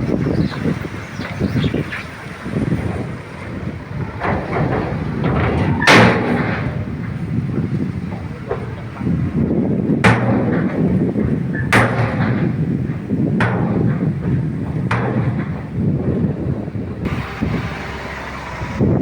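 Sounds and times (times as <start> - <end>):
bulldozer diesel engine rumble: 0.0 - 19.0
weak knocks: 0.1 - 17.2
loud sharp bangs: 2.5 - 16.3.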